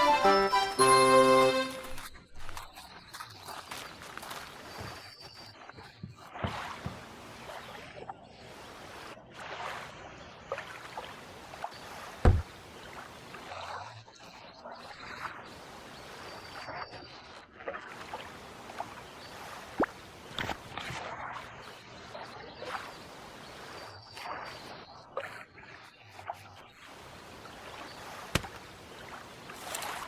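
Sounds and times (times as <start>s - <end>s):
water sloshing and lapping: 1.8s - 15.4s, 16.6s - 30.0s
sharp knock: 12.2s - 12.4s, 28.4s - 28.6s.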